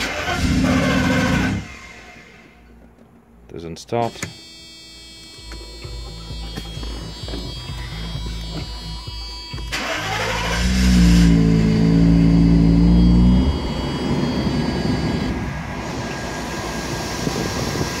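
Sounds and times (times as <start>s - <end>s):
car engine starting and revving: 0.0s - 2.6s, 9.6s - 18.0s.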